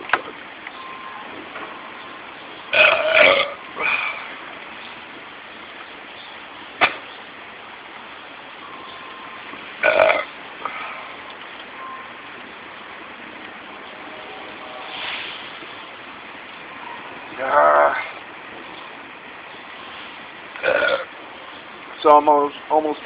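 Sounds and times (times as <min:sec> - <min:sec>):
man burping loudly: 0:02.7 - 0:04.3, 0:09.8 - 0:10.8, 0:20.6 - 0:21.1.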